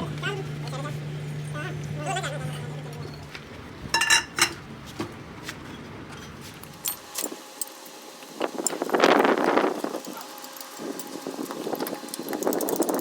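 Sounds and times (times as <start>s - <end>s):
steel parts clinking: 4.0s - 4.6s.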